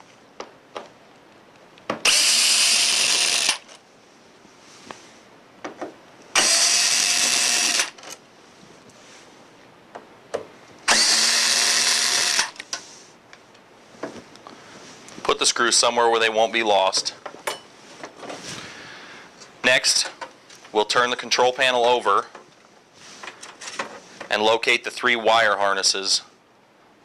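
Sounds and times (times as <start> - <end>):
power drill whining: 2.0 - 3.8, 6.4 - 8.1, 10.9 - 12.6.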